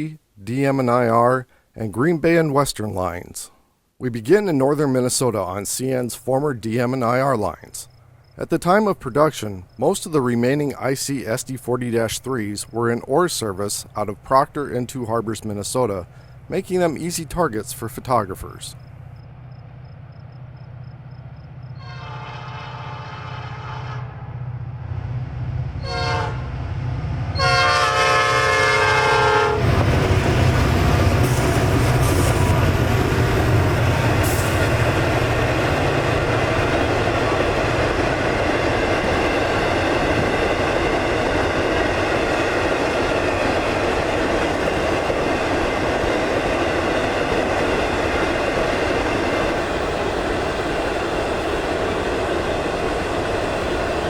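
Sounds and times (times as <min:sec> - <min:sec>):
diesel locomotive engine: 0:04.7 - 0:54.0
train wheels rumbling on rail: 0:07.9 - 0:54.0
train air horn blasts: 0:21.8 - 0:24.2, 0:25.8 - 0:26.6, 0:27.3 - 0:29.8.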